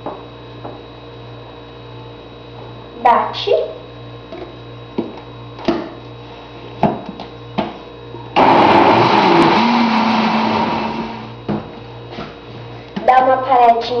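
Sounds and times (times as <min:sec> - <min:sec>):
countertop blender running: 0:08.3 - 0:11.5.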